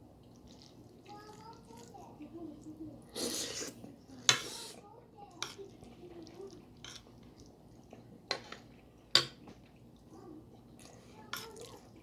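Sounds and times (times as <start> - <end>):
cutlery clinking on plate: 9.2 - 9.5.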